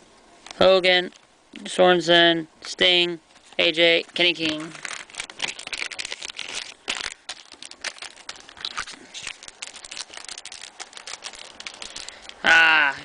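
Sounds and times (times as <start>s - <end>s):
trading cards flipped by hand: 3.4s - 12.4s.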